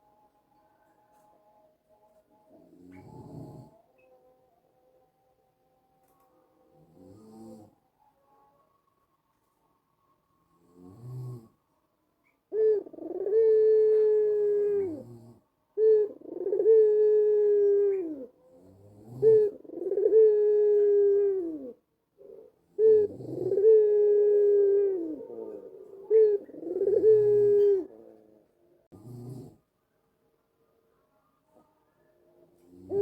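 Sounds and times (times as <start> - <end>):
dove cooing: 2.5 - 4.1, 12.2 - 28.3, 32.7 - 33.0.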